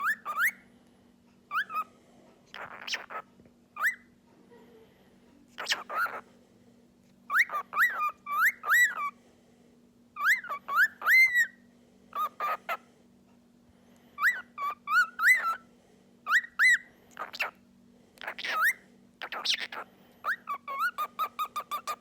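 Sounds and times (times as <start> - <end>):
cockatiel whistling: 0.0 - 0.6, 1.5 - 1.9, 3.8 - 4.1, 7.3 - 9.2, 10.2 - 11.6, 14.2 - 15.6, 16.3 - 17.5, 18.3 - 22.0.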